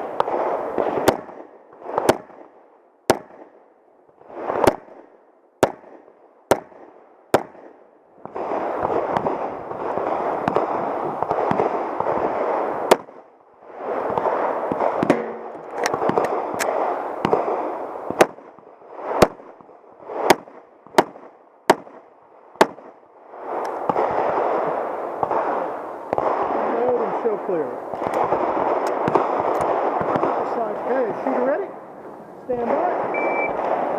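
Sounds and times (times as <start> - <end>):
pistol shots: 0.0 - 3.6, 4.4 - 13.3, 14.0 - 19.6, 20.2 - 23.0, 23.6 - 27.1, 27.9 - 31.6, 32.6 - 33.9
steady rushing noise: 7.5 - 20.6, 23.2 - 33.9.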